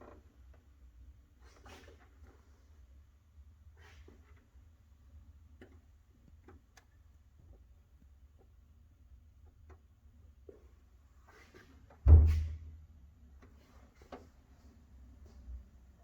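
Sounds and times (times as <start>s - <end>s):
faint clicks and knocks: 5.5s - 8.6s
heavy thud: 12.1s - 12.6s.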